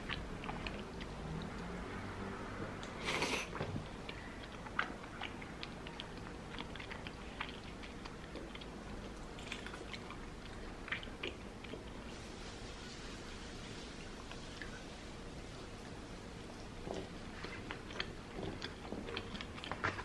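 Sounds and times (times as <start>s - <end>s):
person chewing food: 0.0s - 1.9s, 2.6s - 12.1s, 16.5s - 20.0s.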